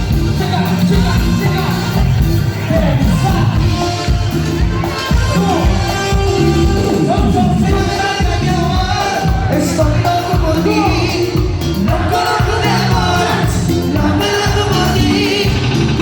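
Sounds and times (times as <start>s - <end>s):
live band playing: 0.0s - 16.0s
person singing: 4.8s - 16.0s.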